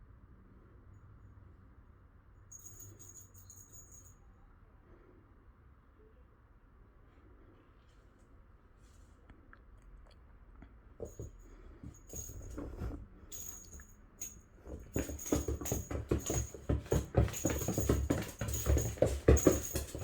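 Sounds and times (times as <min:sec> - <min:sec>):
cat paws pattering and scratching: 0:11.0 - 0:20.0.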